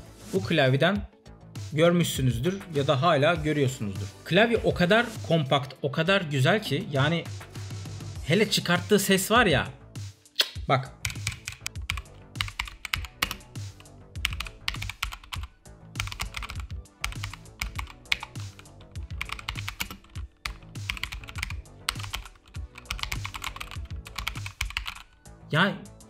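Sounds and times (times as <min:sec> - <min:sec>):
mechanical keyboard typing: 0:11.0 - 0:25.2.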